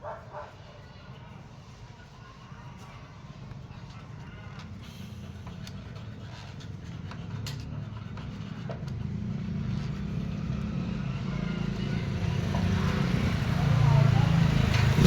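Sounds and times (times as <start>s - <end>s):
vehicle engine running: 3.4s - 15.0s.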